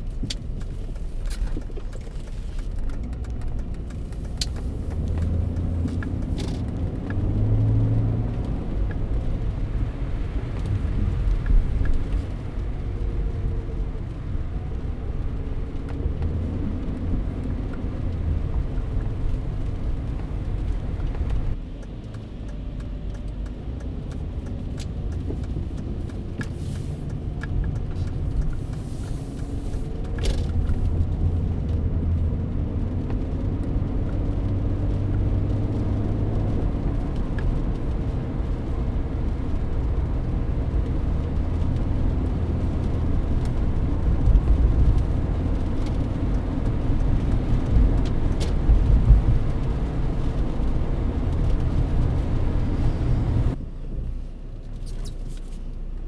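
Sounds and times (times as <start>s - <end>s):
tyre and road rumble: 0.0s - 55.8s
car engine hum: 0.0s - 56.0s.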